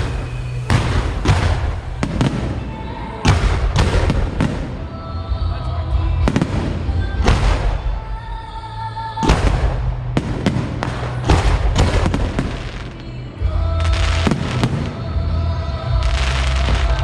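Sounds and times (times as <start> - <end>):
fireworks bursting and crackling: 0.0 - 5.6, 6.3 - 8.4, 9.2 - 17.0
steady music: 0.0 - 17.0.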